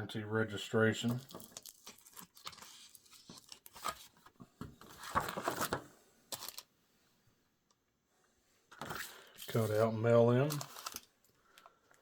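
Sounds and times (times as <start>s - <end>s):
paper and cards rustling: 1.0s - 6.7s, 8.7s - 11.2s.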